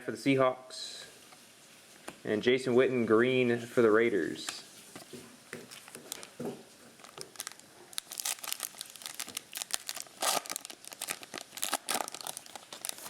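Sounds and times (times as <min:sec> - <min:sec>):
foil wrapper crinkling and tearing: 0:05.6 - 0:13.0.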